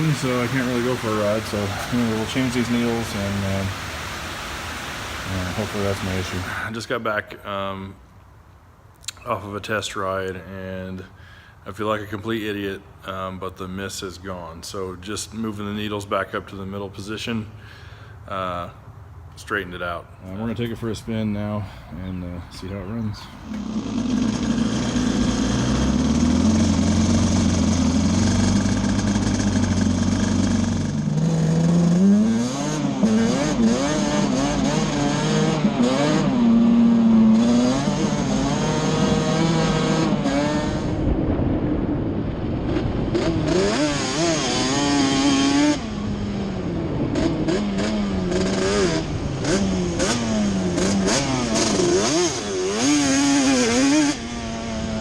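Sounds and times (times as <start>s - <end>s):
two-stroke engine revving: 0.0s - 6.5s, 23.4s - 41.1s, 42.7s - 55.0s.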